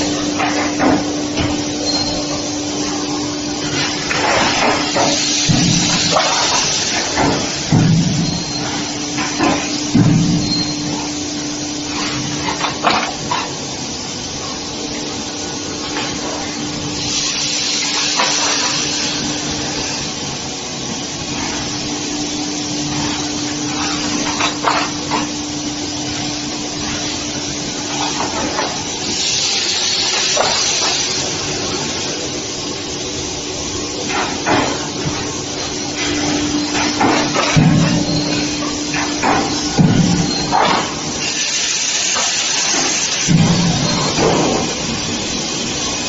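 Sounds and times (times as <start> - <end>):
machine mechanical hum: 0.0 - 46.0
hiss of spraying liquid: 17.0 - 24.3, 25.9 - 32.6, 34.7 - 46.0.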